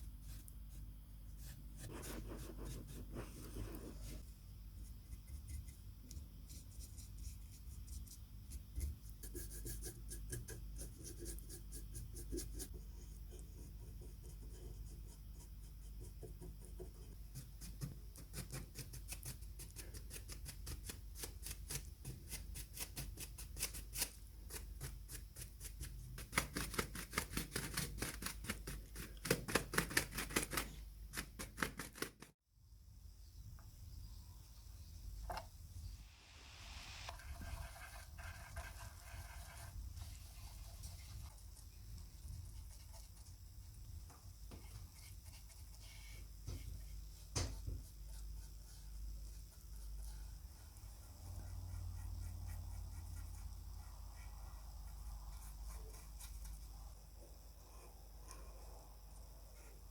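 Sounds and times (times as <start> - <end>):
scraping strokes on surface: 36.4 - 41.4.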